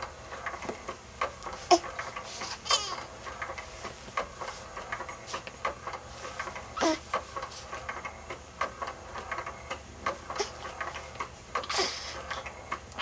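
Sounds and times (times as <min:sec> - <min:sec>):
baby breathy grunt: 0:06.8 - 0:07.0.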